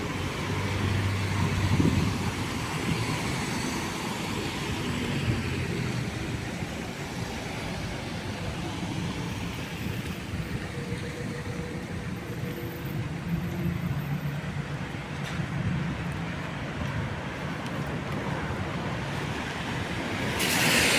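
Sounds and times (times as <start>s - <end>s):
vehicle traffic rumble: 0.0s - 20.9s.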